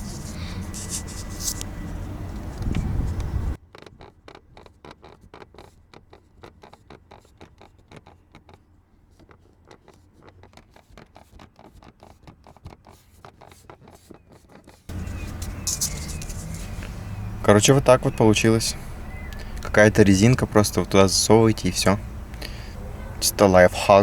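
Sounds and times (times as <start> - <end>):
low cabin rumble: 0.0 - 3.6, 14.9 - 24.0
faint ticks and scratches: 0.0 - 22.4.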